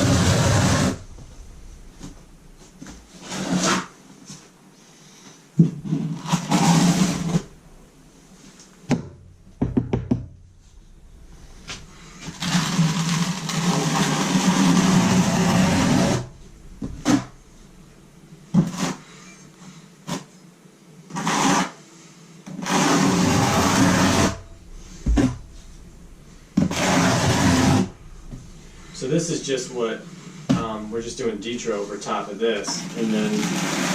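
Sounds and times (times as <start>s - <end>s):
sharp knocks: 8.9s - 10.6s, 23.7s - 29.0s
trowel scraping mortar: 12.2s - 16.3s, 21.1s - 21.8s, 32.8s - 33.9s.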